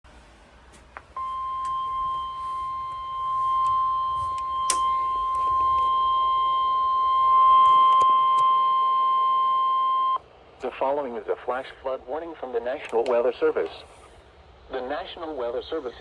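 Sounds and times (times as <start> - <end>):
high-pitched alarm tone: 1.2 - 10.2.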